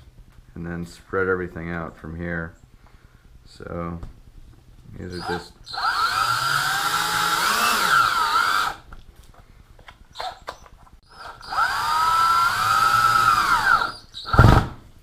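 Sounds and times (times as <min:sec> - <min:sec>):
power drill driving screws: 0:05.2 - 0:08.8, 0:11.1 - 0:14.7.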